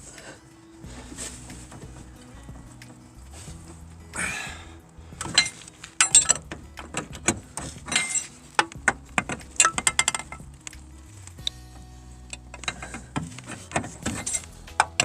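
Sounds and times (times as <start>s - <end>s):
metal tools clinking and knocking: 5.2s - 10.6s, 12.3s - 15.0s.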